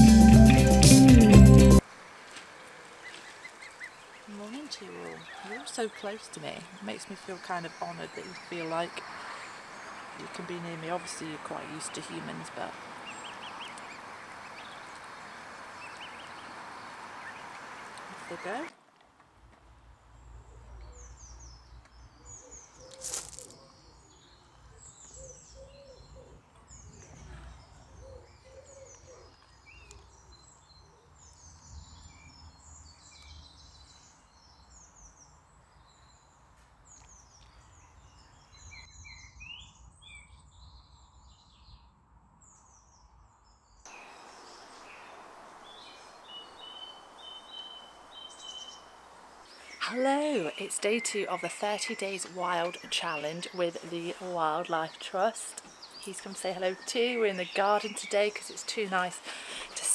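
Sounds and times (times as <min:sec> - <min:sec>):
small birds chirping: 0:03.0 - 0:18.7, 0:43.8 - 0:59.9.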